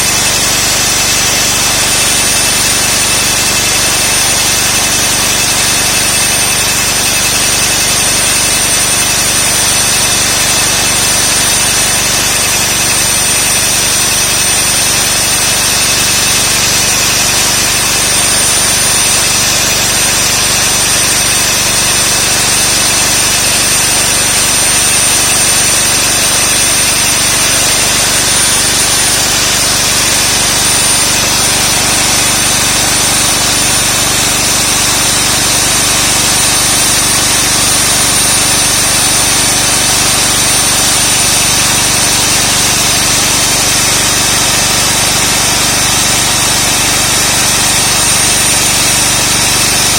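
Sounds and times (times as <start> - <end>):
core drill grinding concrete: 0.0 - 49.9
high drill whine: 0.0 - 49.9.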